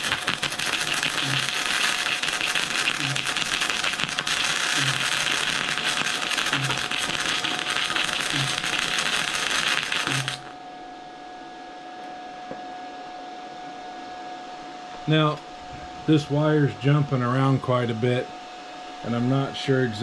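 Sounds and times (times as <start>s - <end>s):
arc welding crackling: 0.0s - 10.6s.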